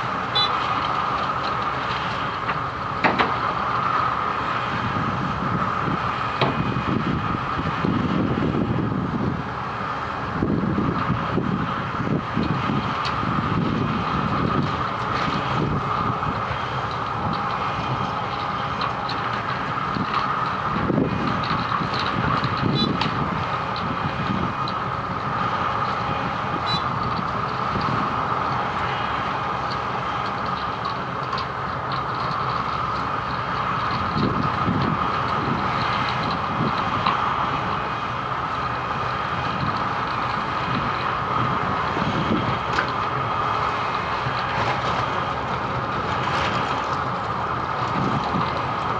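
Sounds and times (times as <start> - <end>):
milling machine engine and drum: 0.0 - 48.9.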